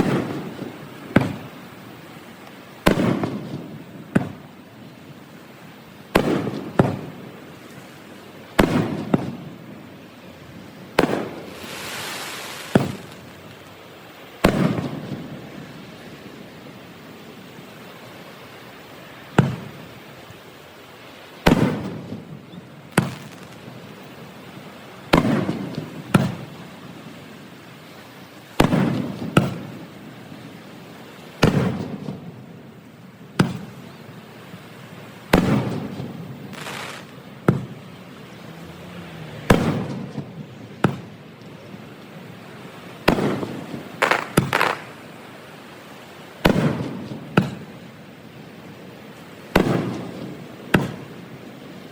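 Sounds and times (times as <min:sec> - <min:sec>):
firework shells bursting: 0:11.0 - 0:13.6, 0:22.9 - 0:23.7, 0:35.4 - 0:37.7, 0:43.1 - 0:45.1.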